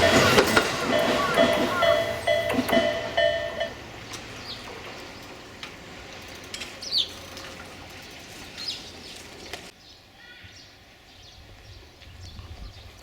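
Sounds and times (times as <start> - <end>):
high bird chirps: 0.0 - 3.8
level-crossing warning bell: 0.0 - 9.0.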